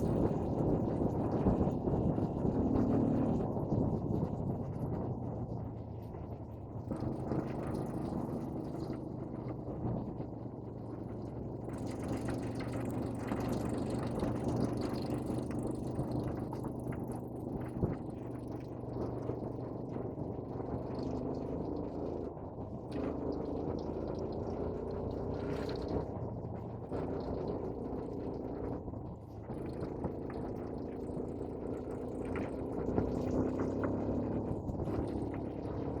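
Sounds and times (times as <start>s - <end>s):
vehicle engine running: 0.0s - 36.0s.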